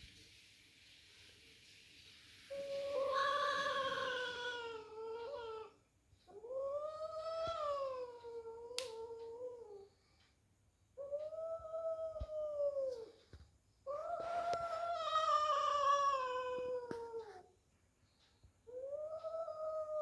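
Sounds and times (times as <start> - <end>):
cat yowling: 2.5 - 9.8, 13.9 - 17.5.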